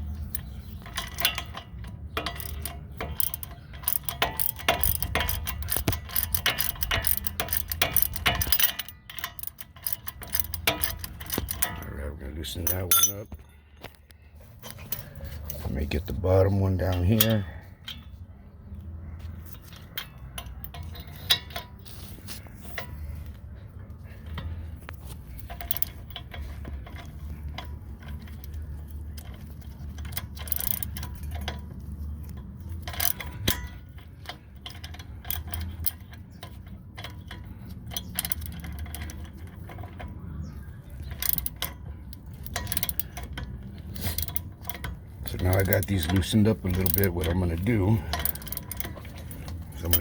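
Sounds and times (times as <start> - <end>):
steady low hum: 0.0 - 50.0
hand ratchet clicking: 0.1 - 11.9, 24.2 - 40.1, 41.0 - 50.0.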